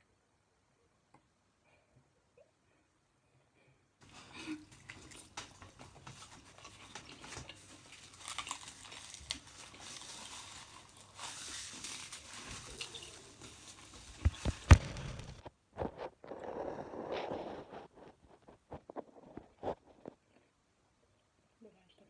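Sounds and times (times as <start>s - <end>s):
eating noises: 4.0s - 14.9s
food rustling and crinkling: 4.0s - 20.6s.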